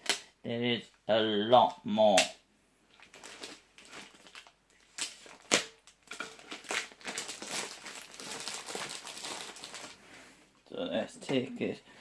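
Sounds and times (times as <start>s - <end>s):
plastic packaging crinkling: 2.9s - 10.0s.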